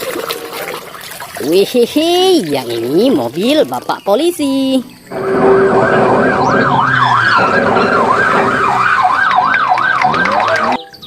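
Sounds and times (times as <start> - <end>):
police car siren wailing: 5.1 - 10.9.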